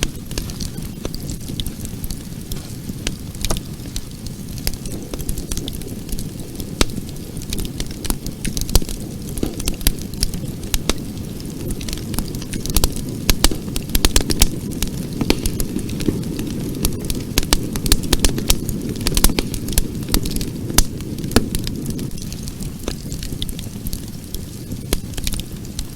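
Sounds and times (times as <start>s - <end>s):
burning wood crackling and popping: 0.0s - 25.9s
low rush of flames: 0.0s - 25.9s.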